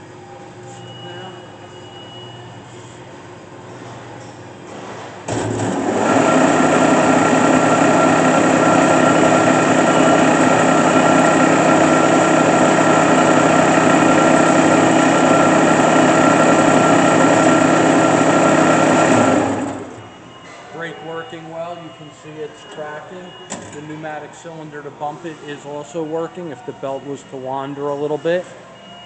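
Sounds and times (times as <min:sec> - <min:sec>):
belt sander humming: 0:05.8 - 0:19.9.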